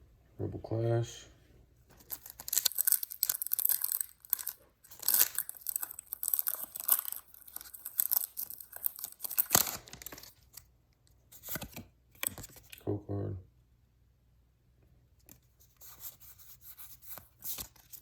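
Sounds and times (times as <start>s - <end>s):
foil wrapper tearing and crinkling: 1.9s - 10.6s.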